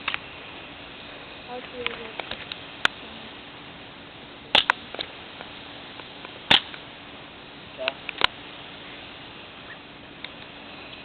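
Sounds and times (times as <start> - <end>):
airsoft pistol pops: 4.5 - 5.1, 6.5 - 6.8.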